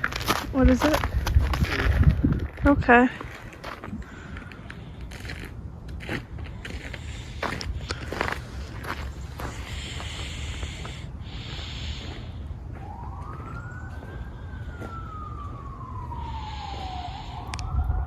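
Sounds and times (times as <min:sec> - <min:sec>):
low rumble: 0:00.0 - 0:18.0
emergency siren wailing: 0:07.9 - 0:18.0.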